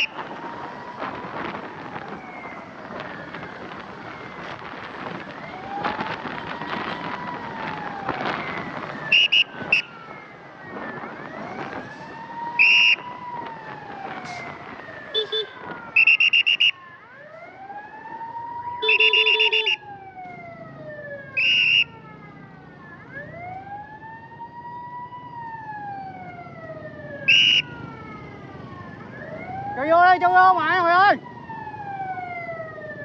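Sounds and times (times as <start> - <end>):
ambulance siren wailing: 0.0 - 33.0
high-pitched horn beeps: 18.8 - 19.8.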